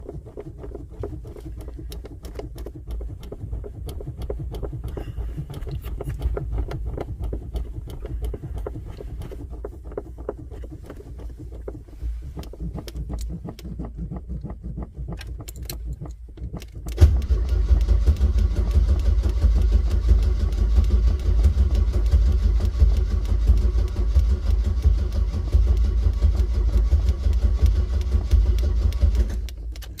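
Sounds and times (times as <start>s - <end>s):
engine cranking by starter: 0.0s - 30.0s
car engine running loudly: 16.5s - 29.9s.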